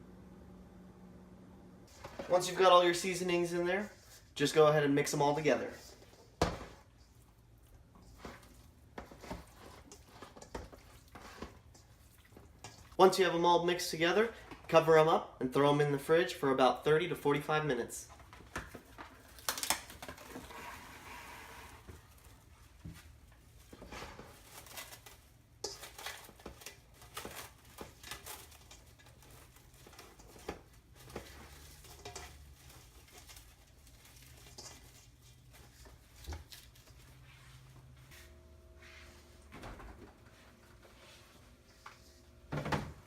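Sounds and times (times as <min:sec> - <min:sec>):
crinkling: 0:18.2 - 0:37.5.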